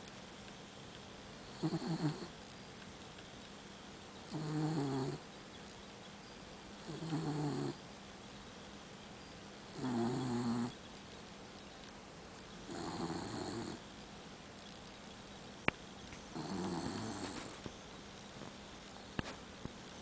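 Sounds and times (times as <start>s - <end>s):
dog snoring: 1.4s - 2.4s, 4.3s - 5.2s, 6.8s - 7.8s, 9.7s - 10.8s, 12.6s - 13.8s, 16.3s - 17.6s.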